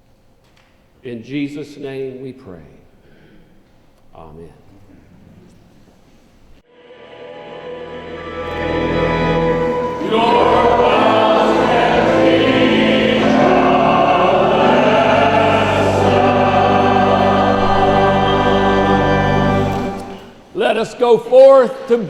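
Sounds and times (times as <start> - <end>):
church choir singing: 6.6 - 20.5.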